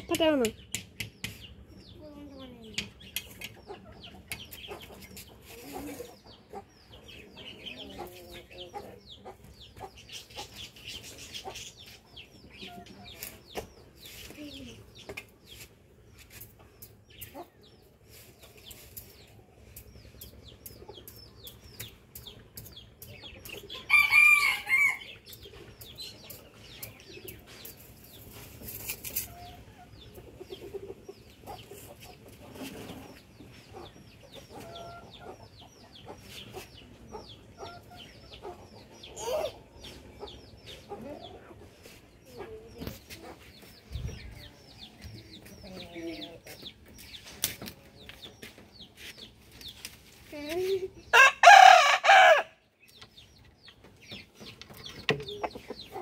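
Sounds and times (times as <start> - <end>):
chickens clucking: 0.0 - 56.0
rooster crowing: 23.9 - 25.0, 51.1 - 52.6.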